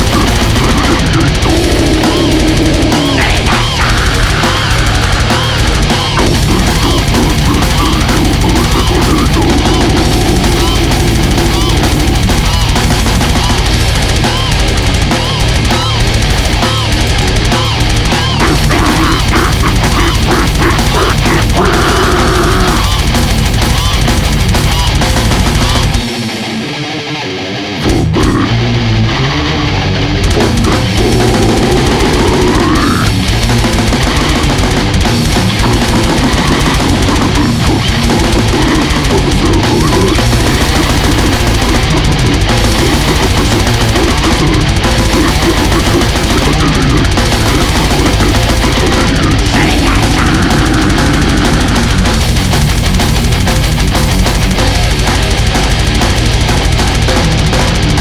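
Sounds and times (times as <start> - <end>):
fast dense drumming: 0.0 - 26.7, 27.8 - 58.0
distorted guitars: 0.0 - 58.0.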